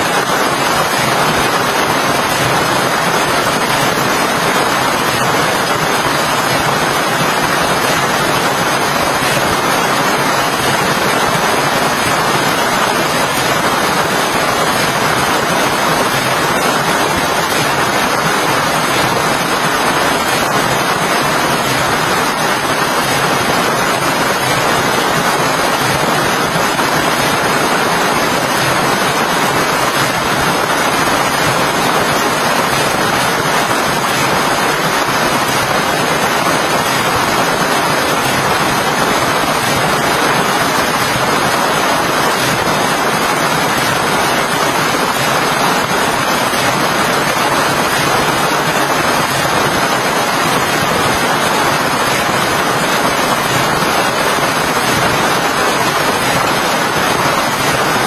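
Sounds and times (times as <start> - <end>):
heavy rain hiss: 0.0 - 58.0.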